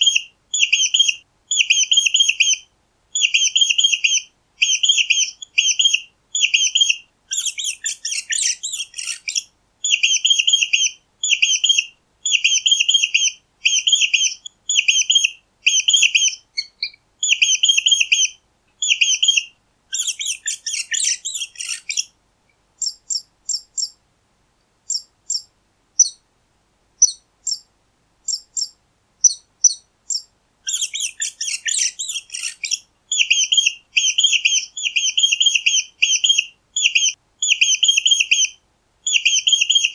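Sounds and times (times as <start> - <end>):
mouse squeaking: 3.3 - 22.1, 22.8 - 24.0, 24.9 - 26.2, 27.0 - 27.7, 28.3 - 38.5
mouse chittering: 6.4 - 11.7, 19.9 - 22.1, 22.8 - 24.0, 24.9 - 26.2, 27.0 - 27.7, 28.3 - 38.5.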